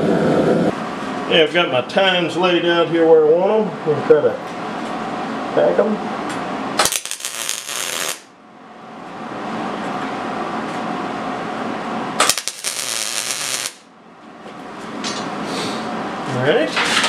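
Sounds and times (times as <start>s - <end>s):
steady shop hum: 0.0s - 17.0s
arc welding crackle: 6.8s - 8.3s, 12.2s - 13.9s.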